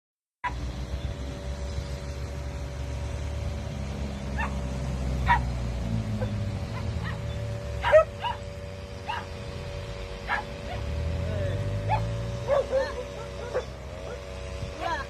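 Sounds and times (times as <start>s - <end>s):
dog barking and yipping: 0.4s - 0.6s, 4.3s - 5.6s, 6.2s - 9.4s, 10.2s - 11.0s, 11.8s - 14.3s
low steady rumble: 0.4s - 15.0s.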